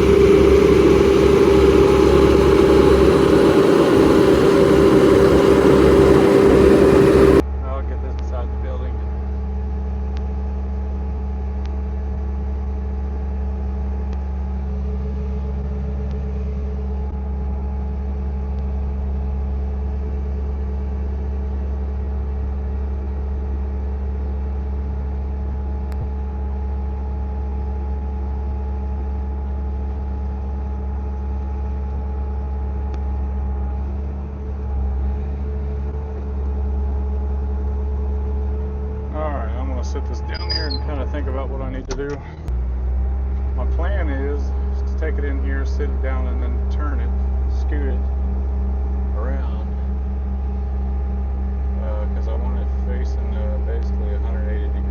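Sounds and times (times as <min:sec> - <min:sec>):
diesel engine drone: 0:00.0 - 0:07.4, 0:38.2 - 0:54.9
steady whine: 0:00.0 - 0:07.4, 0:51.8 - 0:54.9.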